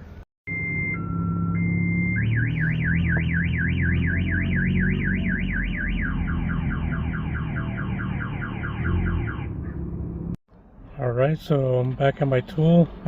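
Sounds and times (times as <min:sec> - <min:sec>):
car alarm siren: 0:00.5 - 0:09.6.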